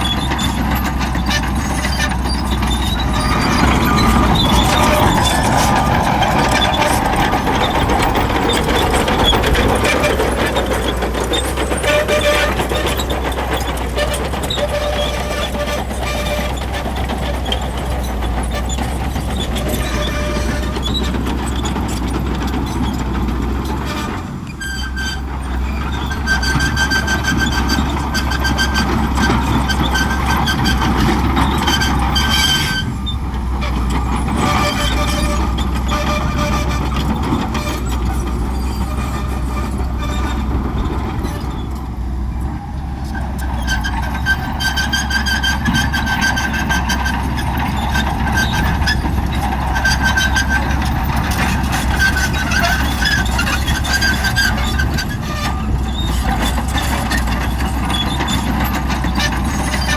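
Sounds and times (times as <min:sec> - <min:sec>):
diesel engine running: 0:00.0 - 0:59.9.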